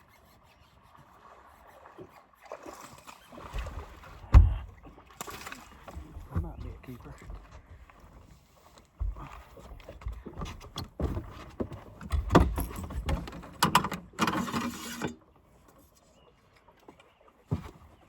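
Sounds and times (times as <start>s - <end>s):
fishing gear clicks and knocks: 8.8s - 15.2s.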